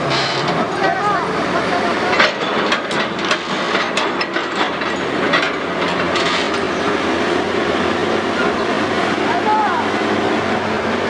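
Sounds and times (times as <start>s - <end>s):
heavy machinery engine: 0.0s - 11.0s
sharp metal clanks and knocks: 2.1s - 6.7s.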